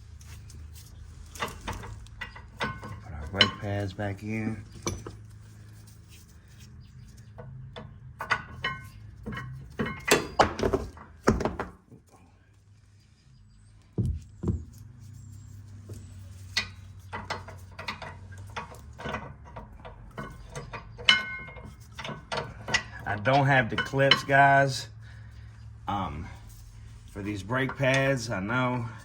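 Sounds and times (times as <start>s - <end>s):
metal clinks and knocks: 0.1s - 12.1s, 14.0s - 24.8s
steady low hum: 12.2s - 29.0s.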